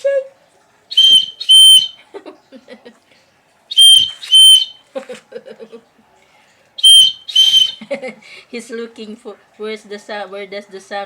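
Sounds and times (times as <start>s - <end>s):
shrill whistle blasts: 0.9s - 2.0s, 3.7s - 4.8s, 6.8s - 7.8s.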